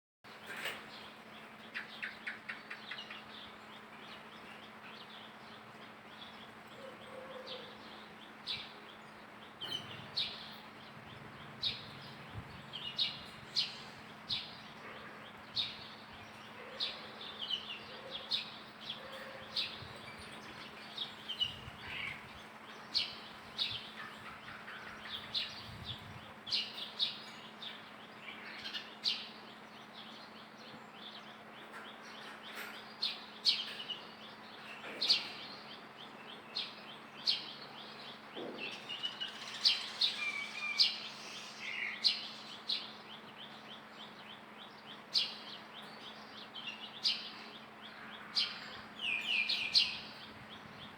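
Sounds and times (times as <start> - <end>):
high-pitched chirping calls: 38.6 - 43.0.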